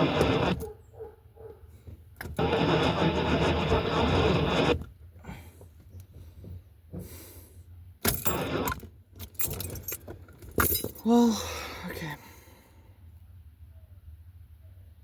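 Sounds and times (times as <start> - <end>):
starter cranking engine: 0.0 - 0.7, 2.2 - 4.9, 8.0 - 9.8.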